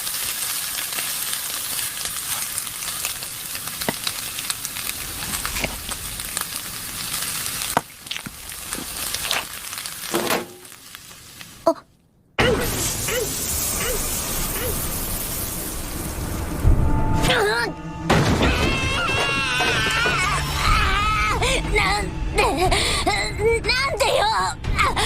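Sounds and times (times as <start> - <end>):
crackling hiss with sharp pops: 0.0 - 11.8, 12.6 - 16.6.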